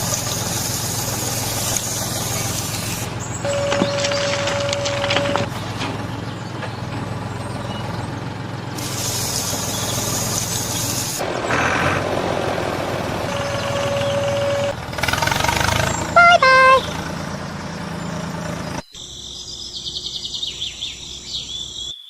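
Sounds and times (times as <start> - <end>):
loud hiss of air: 0.0 - 3.1, 8.8 - 11.2
truck engine running: 0.0 - 21.9.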